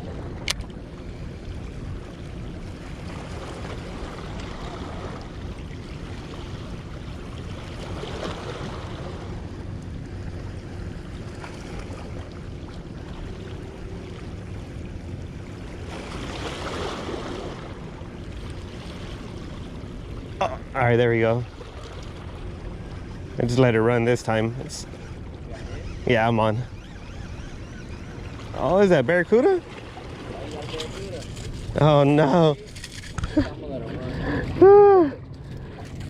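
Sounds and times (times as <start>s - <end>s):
small waves washing: 0.0s - 36.0s.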